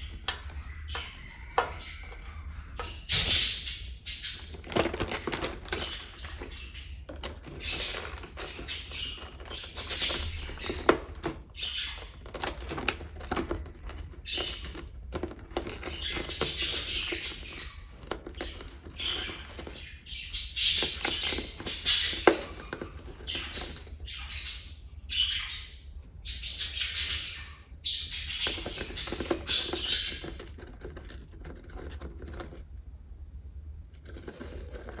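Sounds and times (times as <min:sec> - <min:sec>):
bird chattering chirps: 0:00.0 - 0:04.6, 0:14.1 - 0:30.8.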